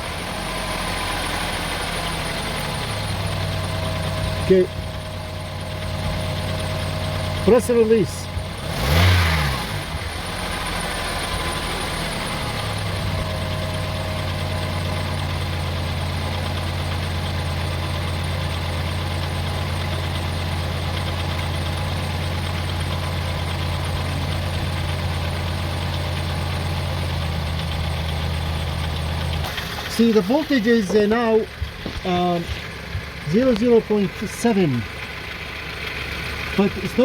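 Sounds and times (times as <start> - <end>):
car engine idling: 0.0 - 37.0.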